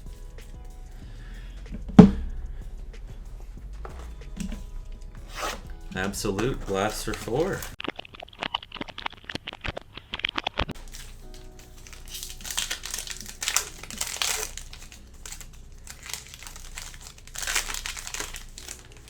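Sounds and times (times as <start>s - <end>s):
plastic wrapping crinkling: 5.3s - 19.0s.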